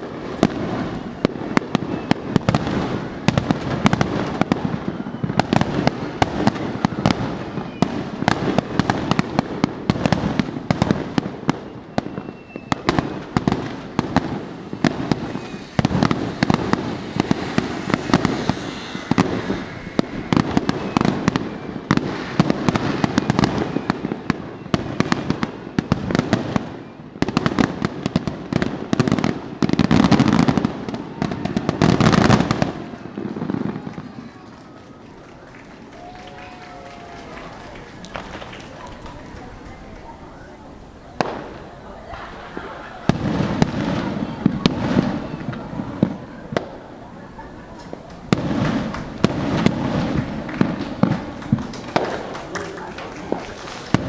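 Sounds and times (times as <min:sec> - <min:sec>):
fireworks bursts and crackles: 0:00.0 - 0:54.0.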